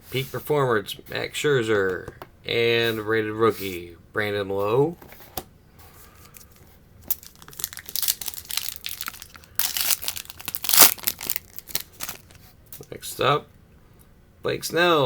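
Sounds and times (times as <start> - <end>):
foil wrapper crinkling and tearing: 7.1 - 12.4.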